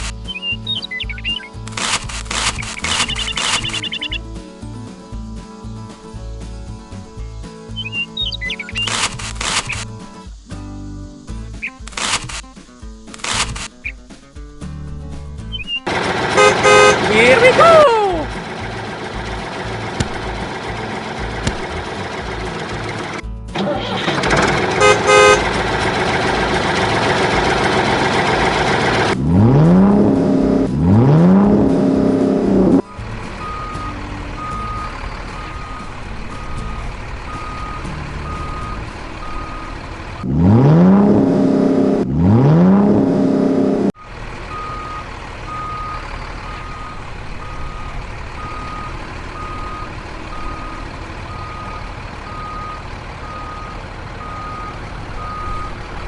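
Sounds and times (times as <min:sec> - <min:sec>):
truck engine revving: 0:00.0 - 0:04.3, 0:15.4 - 0:56.0
reversing beeper: 0:32.8 - 0:39.8, 0:44.0 - 0:55.8.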